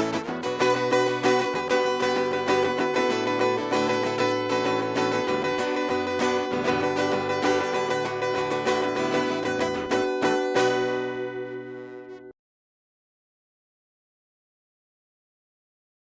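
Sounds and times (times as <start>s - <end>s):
instrumental music with plucked strings: 0.0s - 12.3s.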